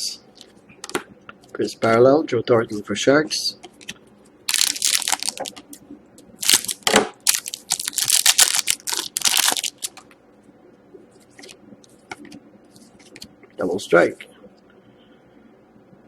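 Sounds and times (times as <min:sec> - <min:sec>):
card pack wrapper crinkling: 0:04.5 - 0:05.7, 0:06.4 - 0:10.1.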